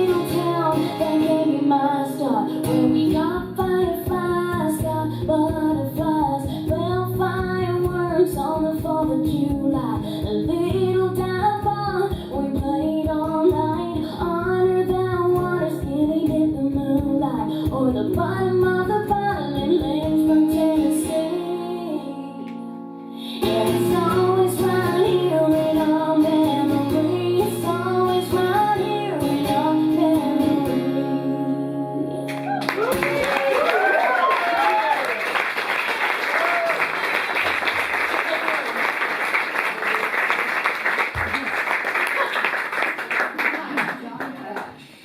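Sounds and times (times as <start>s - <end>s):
woman singing: 0.0s - 33.0s
strummed guitar: 0.0s - 33.3s.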